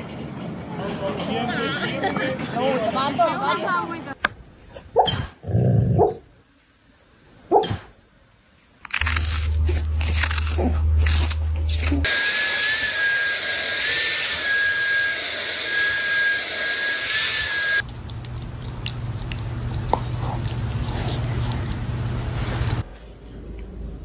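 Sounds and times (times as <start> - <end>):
low hum: 8.8 - 12.1, 17.8 - 24.0.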